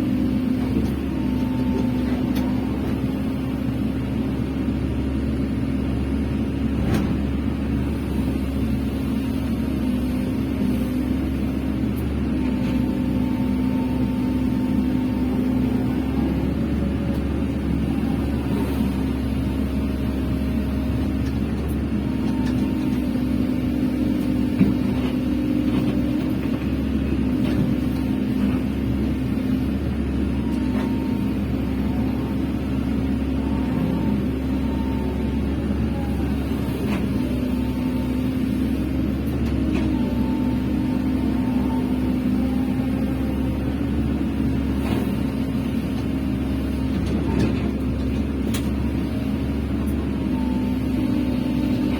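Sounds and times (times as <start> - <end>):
hydraulic whine: 0.0 - 4.6, 7.8 - 51.9
diesel engine running: 0.0 - 51.9.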